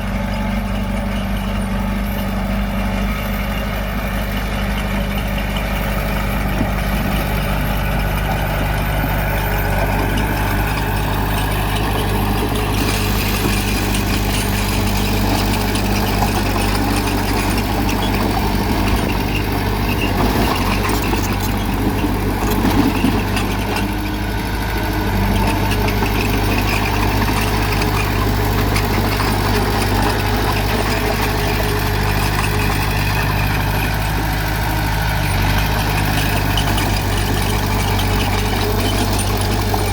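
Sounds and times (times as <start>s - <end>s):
diesel engine running: 0.0s - 39.9s
machine clatter: 9.6s - 24.0s.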